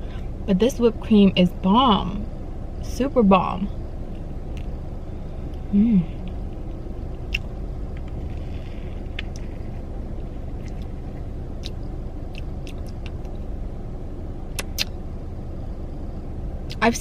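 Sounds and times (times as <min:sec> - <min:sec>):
low hum inside a car: 0:00.0 - 0:17.0
chewing clicks: 0:07.2 - 0:09.7, 0:10.5 - 0:13.4, 0:14.5 - 0:15.0.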